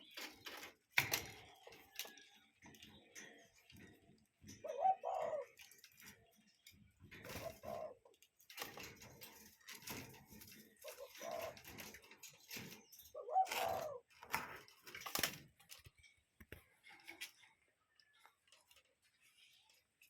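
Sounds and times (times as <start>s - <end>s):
cuckoo calling: 4.5s - 5.8s, 7.2s - 8.1s, 10.7s - 11.8s, 12.8s - 14.1s.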